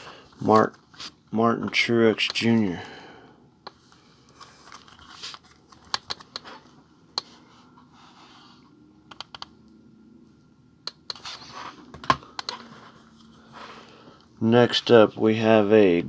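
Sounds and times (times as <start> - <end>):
soft rustling from handling: 3.8 - 8.6.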